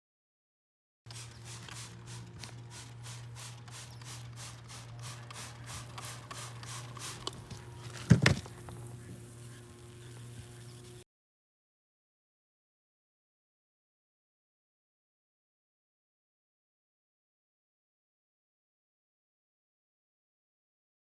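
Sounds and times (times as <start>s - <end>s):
rhythmic scraping strokes: 1.1s - 11.0s
steady low hum: 1.2s - 11.0s.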